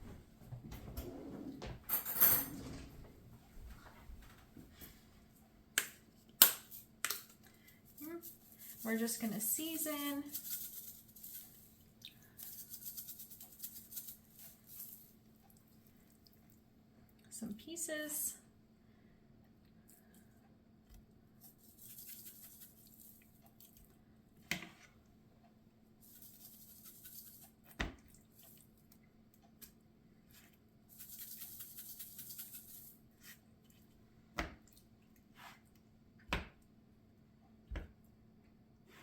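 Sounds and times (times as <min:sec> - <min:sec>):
spice shaker rattling: 0:06.6 - 0:15.2, 0:21.4 - 0:23.3, 0:26.0 - 0:27.6, 0:30.9 - 0:33.0.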